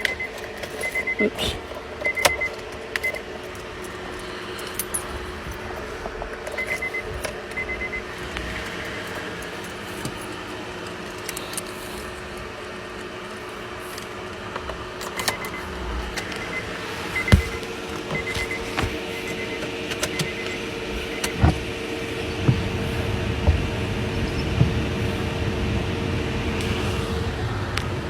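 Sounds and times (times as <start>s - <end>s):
steady low hum: 0.0s - 28.0s
rapid high beeps: 6.6s - 8.1s, 15.2s - 17.6s.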